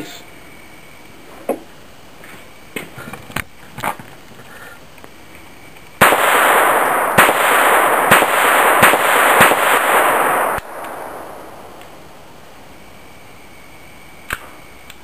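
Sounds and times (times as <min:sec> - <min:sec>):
continuous harsh noise: 0:00.0 - 0:15.0
pistol shots: 0:06.0 - 0:12.2.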